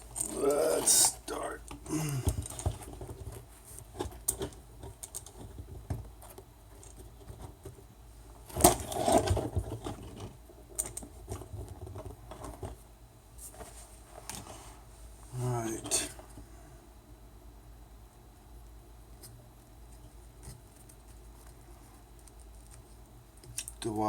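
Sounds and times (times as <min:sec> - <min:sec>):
small parts clicking and rustling: 0:00.0 - 0:07.8, 0:08.5 - 0:12.8.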